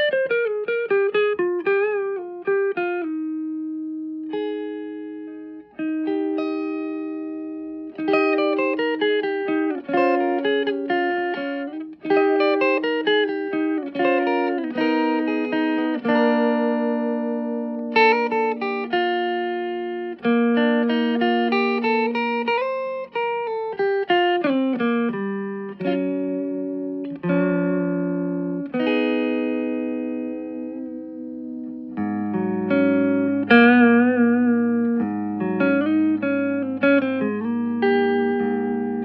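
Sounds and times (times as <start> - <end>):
clean electric guitar notes: 0.1 - 39.0.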